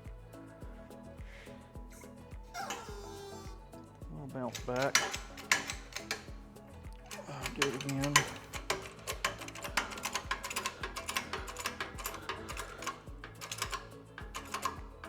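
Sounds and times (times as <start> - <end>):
background music with beat: 0.0 - 15.0
fast dense clicking: 4.5 - 15.0.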